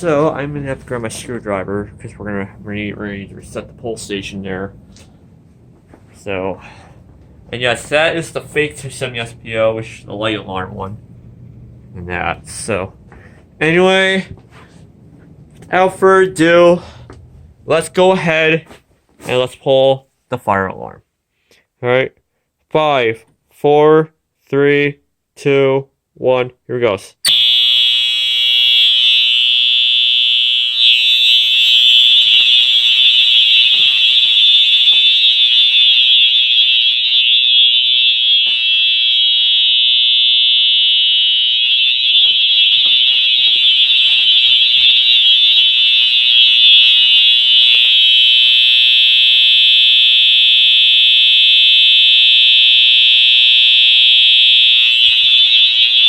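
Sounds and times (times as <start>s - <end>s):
fire alarm horn tone: 27.2s - 56.0s.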